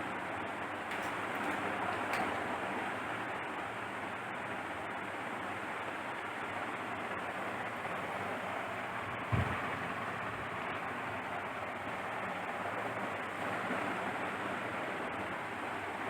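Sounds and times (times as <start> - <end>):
short low thump: 9.3 - 9.7.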